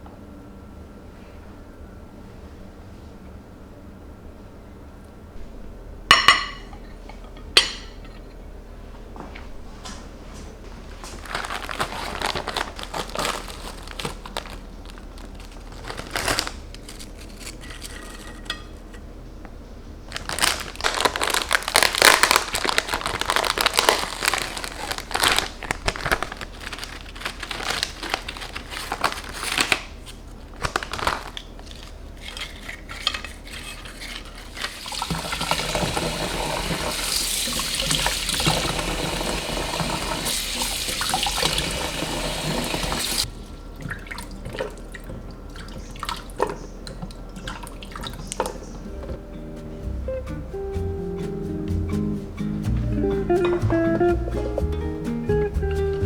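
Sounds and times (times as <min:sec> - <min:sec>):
rustling and crinkling: 0:09.0 - 0:36.3
tap water running into sink: 0:34.5 - 0:48.6.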